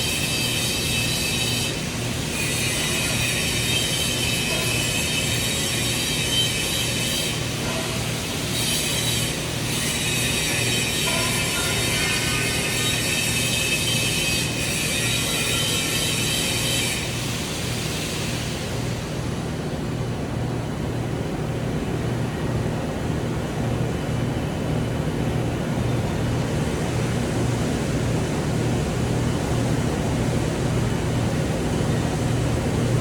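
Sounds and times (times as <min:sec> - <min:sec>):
welding arc buzzing: 0:00.0 - 0:18.8.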